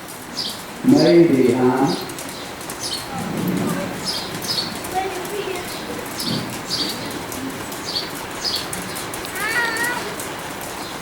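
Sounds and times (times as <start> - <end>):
small birds chirping: 0.1 - 11.0
faint voices: 0.8 - 11.0.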